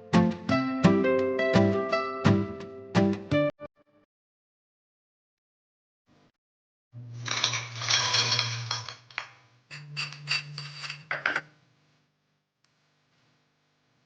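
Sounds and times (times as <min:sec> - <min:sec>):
utensils scraping a dish: 0:07.2 - 0:11.4
utensils clattering: 0:07.2 - 0:11.5.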